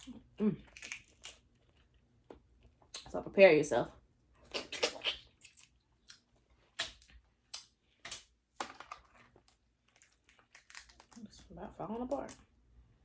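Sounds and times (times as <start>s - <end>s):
wet chewing and biting: 0.0s - 3.2s, 4.4s - 8.4s, 9.0s - 11.3s.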